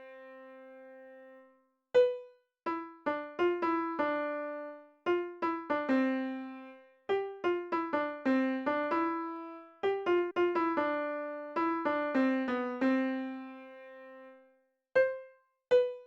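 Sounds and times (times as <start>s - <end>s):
slow solo piano melody: 2.0s - 14.4s.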